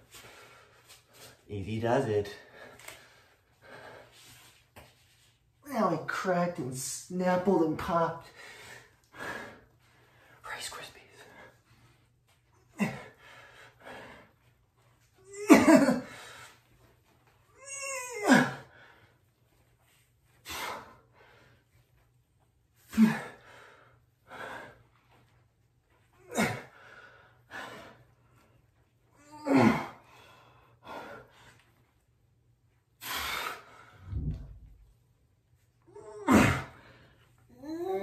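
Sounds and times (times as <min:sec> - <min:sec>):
man breathing hard and grunting: 0:22.9 - 0:24.8
man groaning: 0:29.2 - 0:30.0, 0:36.0 - 0:36.8.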